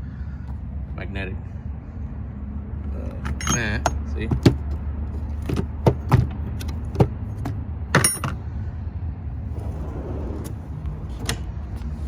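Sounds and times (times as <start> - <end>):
steady low hum: 0.0 - 12.0
metal hand tools clinking: 3.2 - 4.0, 8.0 - 8.4.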